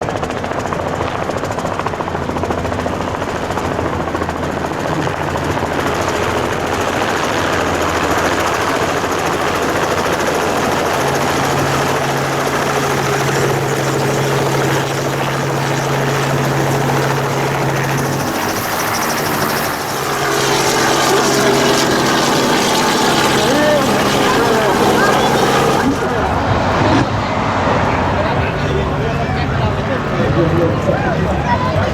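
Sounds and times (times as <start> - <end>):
helicopter rotor and engine: 0.0 - 31.9.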